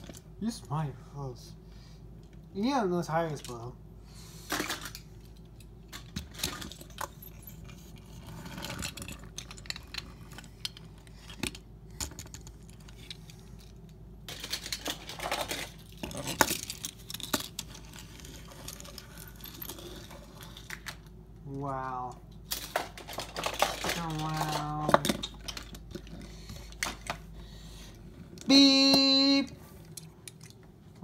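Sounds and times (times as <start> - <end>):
toy cars clattering: 4.4 - 21.2, 22.0 - 27.5.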